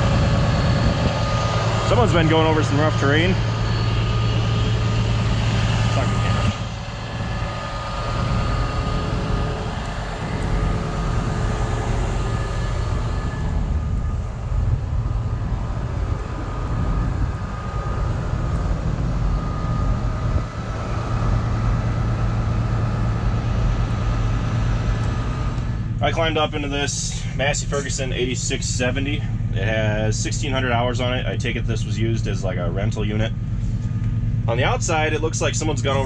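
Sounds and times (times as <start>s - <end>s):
diesel tractor engine idling: 0.0s - 36.0s
people talking: 1.8s - 3.5s, 5.9s - 6.6s, 26.0s - 33.3s, 34.5s - 36.0s.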